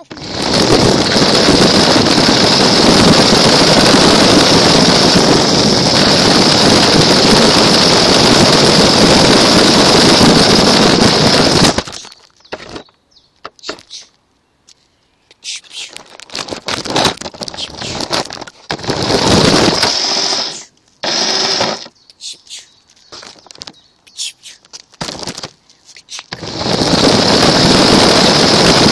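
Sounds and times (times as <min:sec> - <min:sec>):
toy car motor whine: 0:00.0 - 0:12.9, 0:16.8 - 0:22.6, 0:26.2 - 0:28.9
wheels rattling on ground: 0:00.0 - 0:13.0, 0:15.7 - 0:22.0, 0:24.8 - 0:25.6, 0:26.3 - 0:28.9
short scrapes and clicks: 0:15.3 - 0:27.0.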